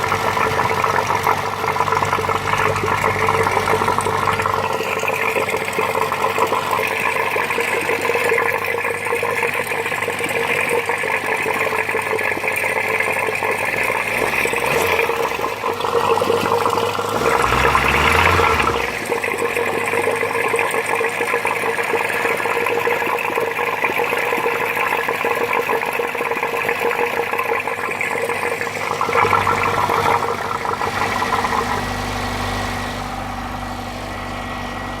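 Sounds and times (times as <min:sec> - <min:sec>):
car engine revving: 0:13.8 - 0:20.2, 0:28.3 - 0:34.8.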